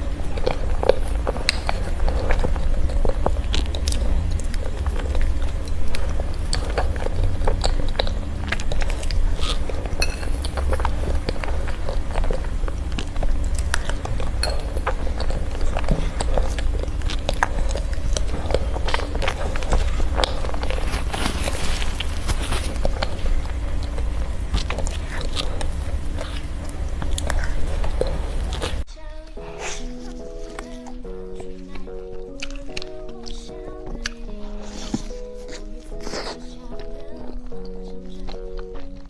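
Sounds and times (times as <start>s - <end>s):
steady low hum: 0.0s - 39.0s
utensils clinking on dishes: 8.0s - 11.4s, 13.7s - 16.2s.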